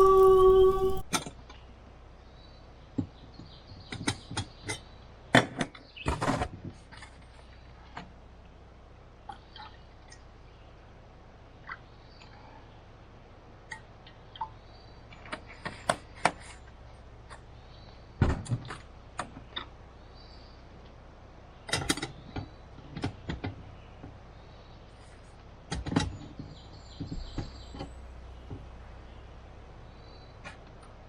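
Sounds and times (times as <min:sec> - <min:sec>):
faint low hum: 0:00.0 - 0:31.0
clicks knocks and thuds: 0:18.2 - 0:19.7, 0:21.7 - 0:24.2, 0:25.7 - 0:28.7.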